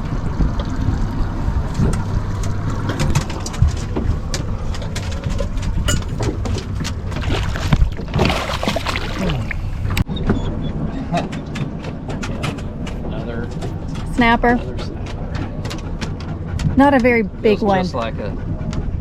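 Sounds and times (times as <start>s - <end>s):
water noise: 0.0s - 10.1s, 11.3s - 19.0s
boat engine hum: 0.0s - 19.0s
wind: 0.0s - 19.0s
knocks on hull and deck: 1.8s - 10.0s.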